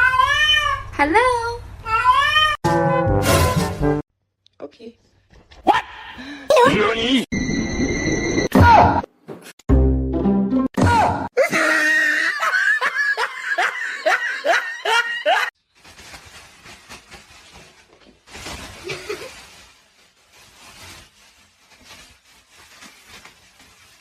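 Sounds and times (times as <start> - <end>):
person laughing loudly: 11.4 - 15.5.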